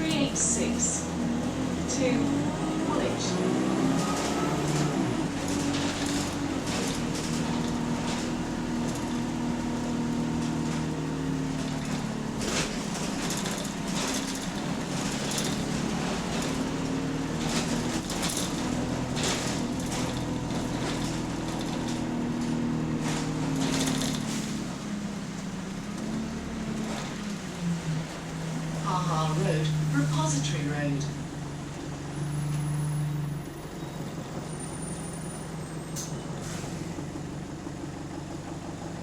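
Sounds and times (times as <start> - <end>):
bus engine under load: 0.0 - 39.0
bus body knocks and rattles: 3.9 - 28.5.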